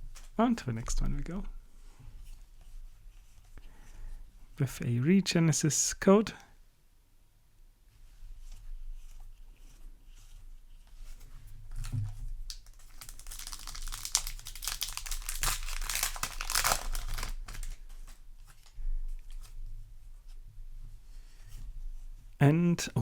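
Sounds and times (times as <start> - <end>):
foil wrapper crinkling and tearing: 12.5 - 18.2
cards rustling: 12.5 - 18.7.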